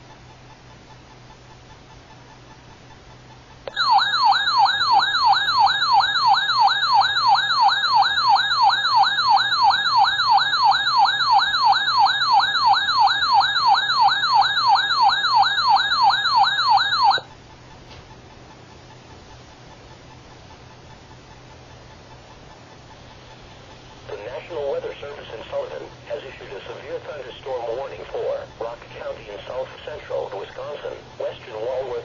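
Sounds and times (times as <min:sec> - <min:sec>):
electronic siren alert tone: 0:03.7 - 0:17.3.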